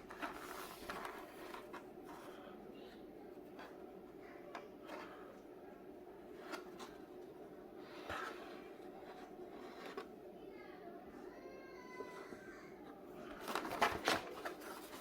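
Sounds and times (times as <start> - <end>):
packaging rustling: 0.0 - 2.0, 13.3 - 15.0
steady low hum: 0.0 - 15.0.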